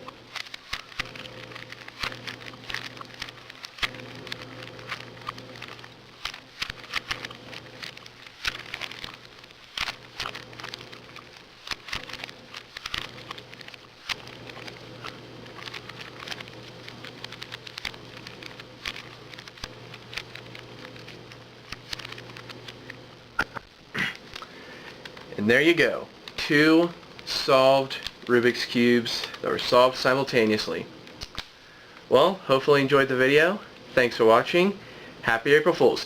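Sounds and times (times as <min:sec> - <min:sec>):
steady low hum: 0:00.0 - 0:36.0
puzzle cube clicking: 0:00.3 - 0:22.9.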